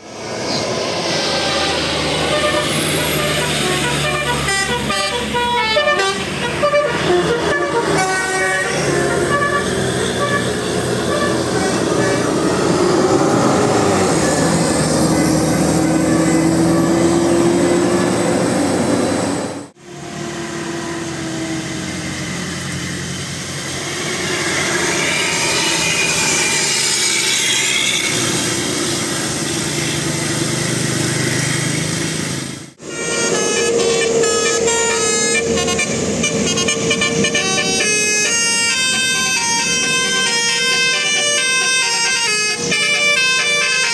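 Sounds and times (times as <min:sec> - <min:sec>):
vehicle noise: 0:00.0 - 0:43.9
musical bus air horns: 0:01.3 - 0:12.9, 0:15.9 - 0:17.6, 0:32.8 - 0:43.9.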